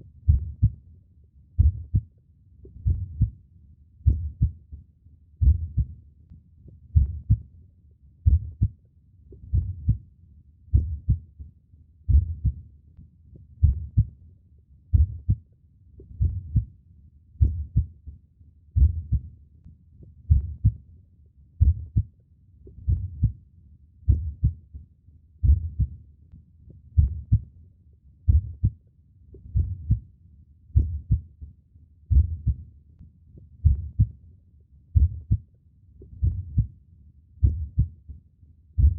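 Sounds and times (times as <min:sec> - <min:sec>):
human heartbeat: 0:00.2 - 0:00.8, 0:01.6 - 0:03.4, 0:04.0 - 0:04.8, 0:05.4 - 0:06.0, 0:06.7 - 0:07.5, 0:08.2 - 0:10.0, 0:10.7 - 0:11.4, 0:12.1 - 0:12.7, 0:13.4 - 0:14.2, 0:14.9 - 0:16.7, 0:17.4 - 0:18.2, 0:18.8 - 0:19.3, 0:20.0 - 0:20.8, 0:21.6 - 0:23.4, 0:24.0 - 0:24.7, 0:25.4 - 0:26.0, 0:26.7 - 0:27.5, 0:28.3 - 0:28.8, 0:29.4 - 0:30.1, 0:30.8 - 0:31.5, 0:32.1 - 0:32.7, 0:33.4 - 0:34.2, 0:34.9 - 0:36.8, 0:37.4 - 0:38.2.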